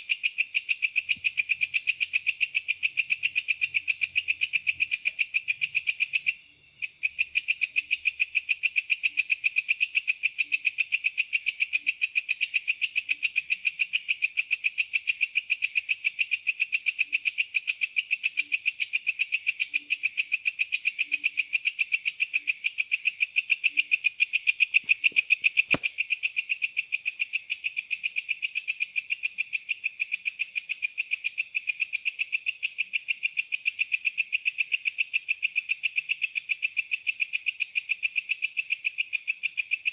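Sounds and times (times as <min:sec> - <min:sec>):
night insects trilling: 0:00.0 - 0:39.9
sharp click: 0:24.6 - 0:26.1.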